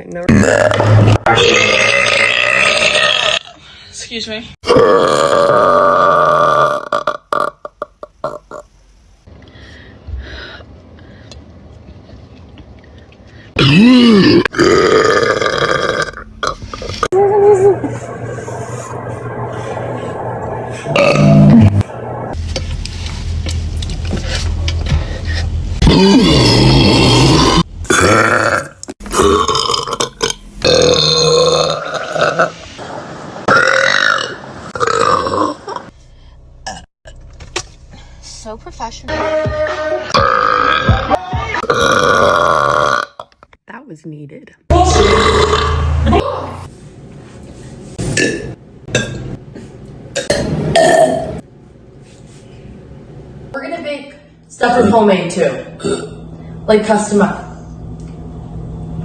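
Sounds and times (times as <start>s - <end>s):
girl burping: 0.3s - 3.6s, 4.6s - 8.4s, 13.6s - 16.6s, 40.2s - 40.9s, 41.6s - 43.2s, 44.7s - 46.3s, 55.8s - 56.2s.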